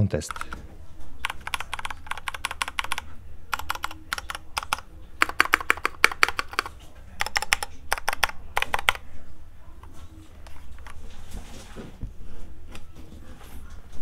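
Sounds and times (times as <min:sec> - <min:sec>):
mechanical keyboard keystrokes: 0:00.3 - 0:00.6, 0:01.2 - 0:09.0.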